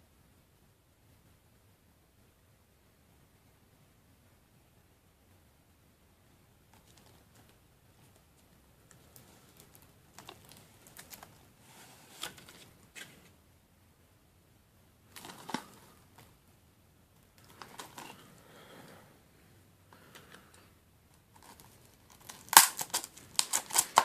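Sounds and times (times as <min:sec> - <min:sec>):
plastic wrap crinkling: 0:08.9 - 0:13.3, 0:15.1 - 0:16.3, 0:21.2 - 0:24.0
package clatter: 0:21.4 - 0:24.0
package handling clicks and taps: 0:22.2 - 0:24.0.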